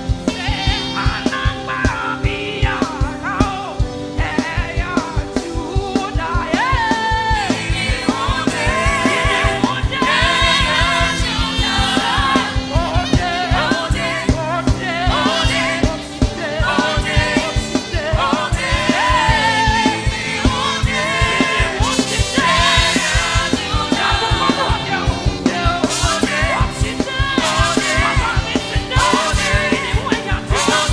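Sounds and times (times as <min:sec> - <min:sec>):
band playing: 0:00.0 - 0:30.9
fast drum beat: 0:00.0 - 0:30.9
gospel singers: 0:00.0 - 0:30.9.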